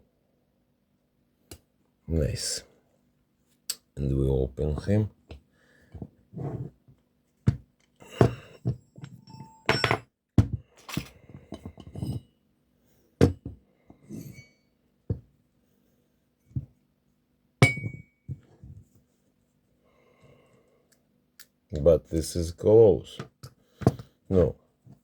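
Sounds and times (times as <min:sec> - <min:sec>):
sharp knock with ring: 0:17.6 - 0:18.2.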